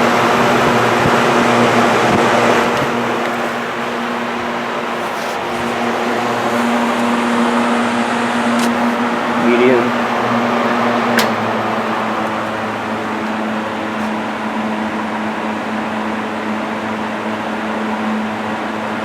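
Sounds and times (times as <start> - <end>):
fan switch click: 0.0 - 4.6, 8.3 - 14.2
fan air rush and motor hum: 0.0 - 19.0.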